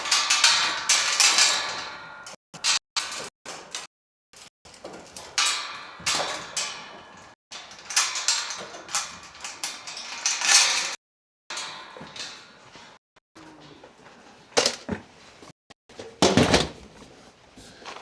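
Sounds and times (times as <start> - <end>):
metal barn hardware clanking: 0.0 - 3.9, 4.8 - 13.0.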